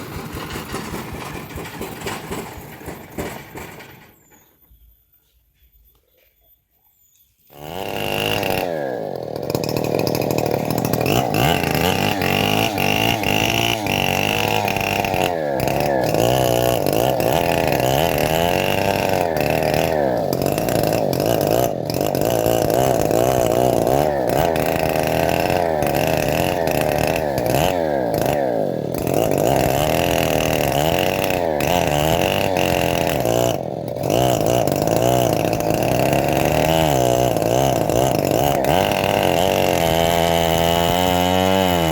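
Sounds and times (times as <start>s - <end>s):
bandsaw mill sawing log: 0.0s - 4.1s, 7.5s - 41.9s.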